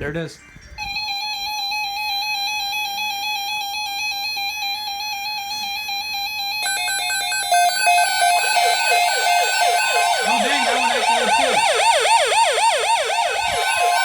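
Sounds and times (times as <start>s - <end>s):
pulsing alarm tone: 0.9s - 14.0s
siren-like alert alarm: 0.9s - 14.0s.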